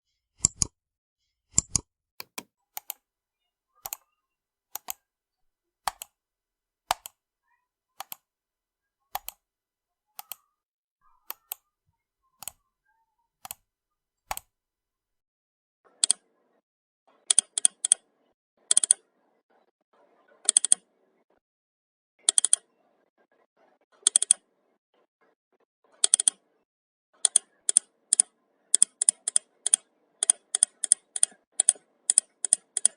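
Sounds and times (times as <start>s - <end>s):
computer mouse clicks: 0.4s - 0.7s, 1.5s - 3.0s, 3.8s - 4.0s, 4.7s - 5.0s, 5.9s - 6.1s, 6.9s - 7.2s, 8.0s - 8.2s, 9.1s - 9.4s, 10.2s - 10.4s, 11.1s - 11.7s, 12.4s - 12.6s, 13.4s - 13.6s, 14.3s - 14.5s, 16.0s - 16.2s, 17.3s - 18.0s, 18.7s - 19.0s, 20.5s - 20.8s, 22.3s - 22.6s, 24.0s - 24.4s, 26.0s - 26.4s, 27.2s - 32.9s.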